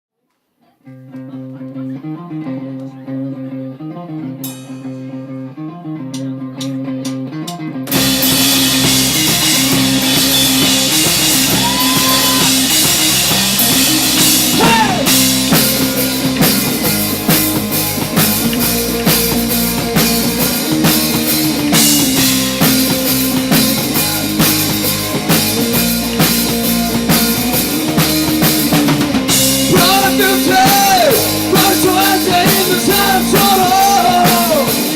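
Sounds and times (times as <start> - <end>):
guitar riff: 0.8 - 34.9
rock band playing: 3.7 - 34.9
drum hits: 7.9 - 34.9.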